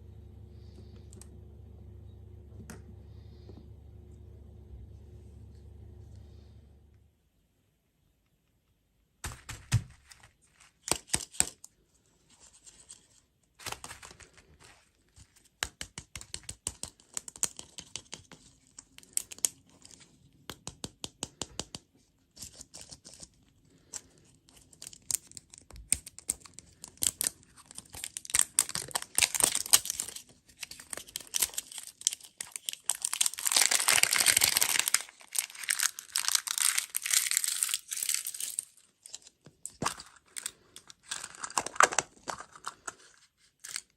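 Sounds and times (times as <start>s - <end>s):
plastic wrappers crinkling: 12.4s - 15.5s, 22.4s - 43.9s
wrapper tearing: 24.7s - 43.9s.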